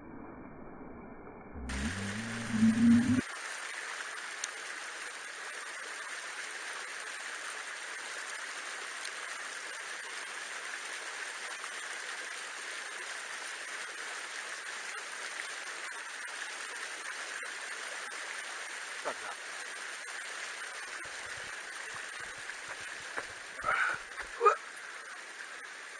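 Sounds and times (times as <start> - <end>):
intro music: 1.7 - 3.2
flowing water rushing: 1.7 - 25.9.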